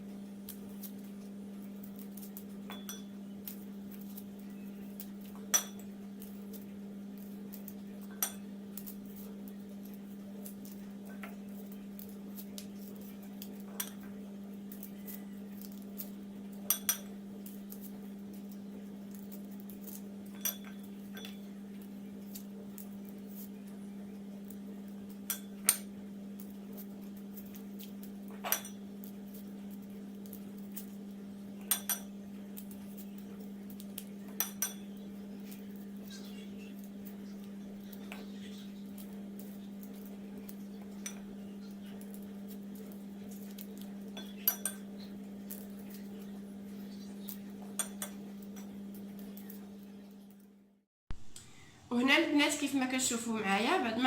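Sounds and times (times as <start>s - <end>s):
steady low hum: 0.0s - 54.0s
sharp clinks against a dish: 2.7s - 3.1s, 20.3s - 21.4s, 31.7s - 32.1s, 34.4s - 34.9s, 44.2s - 44.9s.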